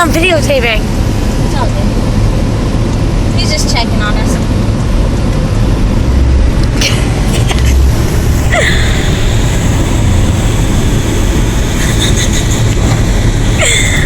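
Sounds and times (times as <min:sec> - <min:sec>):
engine and road rumble: 0:00.0 - 0:14.0
thin high hum: 0:05.5 - 0:14.0.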